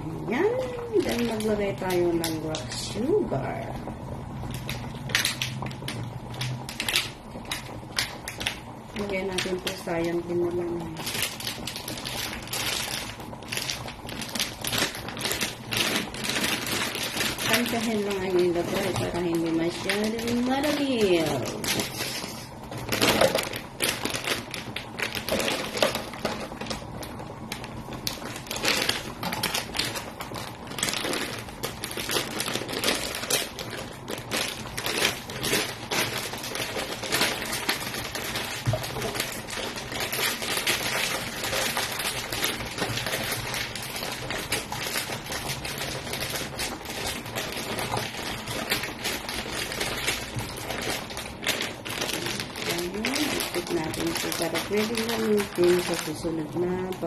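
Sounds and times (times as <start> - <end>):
rapid clicking and rattling: 10.8 - 57.0.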